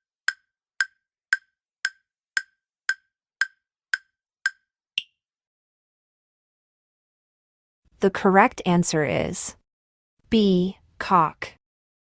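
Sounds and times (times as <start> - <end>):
countdown timer wooden ticks: 0.0 - 5.2.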